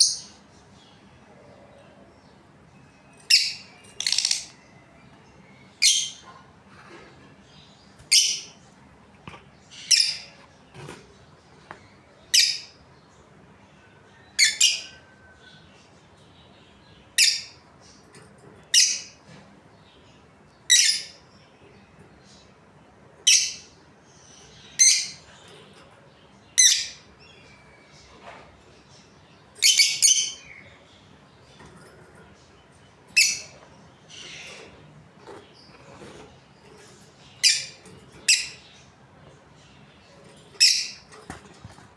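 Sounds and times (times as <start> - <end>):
budgerigars chirping: 3.2 - 4.6, 26.5 - 27.5, 29.6 - 30.9, 33.1 - 39.0, 39.7 - 41.4.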